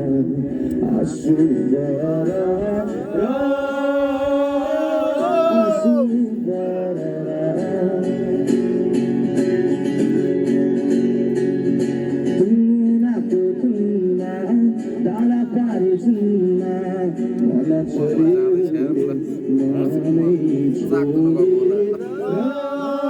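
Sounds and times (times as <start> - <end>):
person singing: 0.0 - 8.4
acoustic guitar strummed chords: 0.0 - 23.0.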